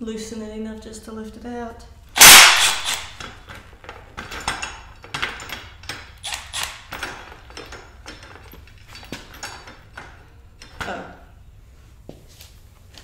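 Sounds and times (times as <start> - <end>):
light metallic clinks and knocks: 3.1 - 11.2.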